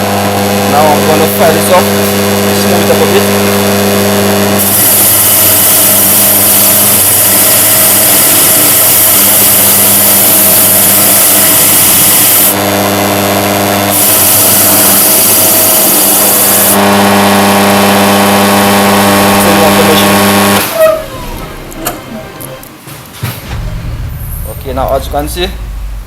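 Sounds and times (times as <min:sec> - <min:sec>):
motor hum: 0:00.0 - 0:26.0
grinding hiss of key on wheel: 0:04.6 - 0:12.6, 0:13.9 - 0:16.8.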